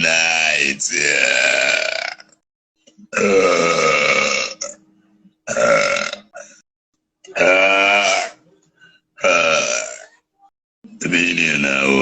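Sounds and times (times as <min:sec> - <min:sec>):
woman belching loudly: 0:01.0 - 0:02.4, 0:03.1 - 0:04.8, 0:05.5 - 0:06.5, 0:07.3 - 0:08.4, 0:09.2 - 0:10.2.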